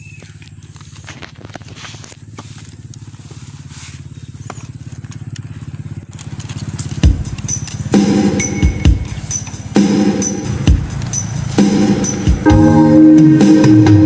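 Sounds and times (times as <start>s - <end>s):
electric grass trimmer running: 0.2s - 12.4s
loud steady high tones: 9.8s - 14.0s.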